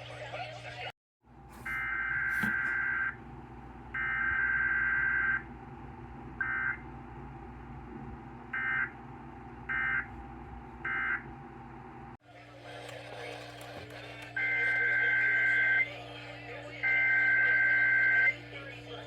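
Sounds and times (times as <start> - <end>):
broadcast hum and static: 11.3 - 19.0.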